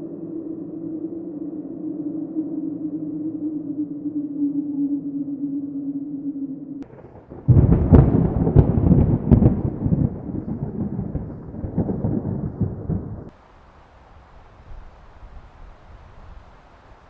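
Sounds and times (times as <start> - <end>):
thunderclap: 6.8 - 13.4.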